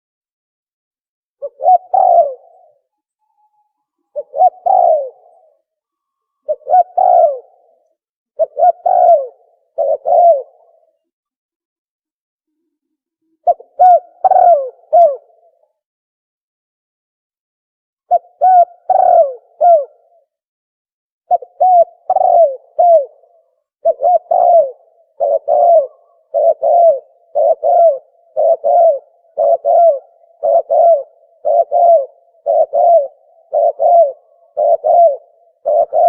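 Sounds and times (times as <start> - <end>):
dove cooing: 1.4 - 5.7, 6.4 - 7.8, 8.4 - 11.0, 13.4 - 15.6, 18.1 - 20.3, 21.3 - 36.0.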